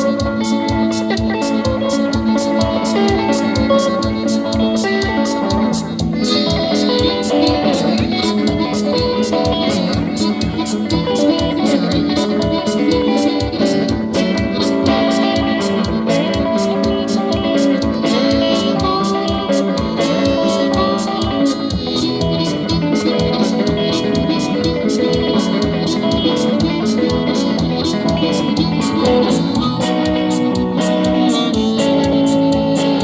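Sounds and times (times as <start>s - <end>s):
guitar: 0.0s - 33.0s
steady drum beat: 0.0s - 33.0s.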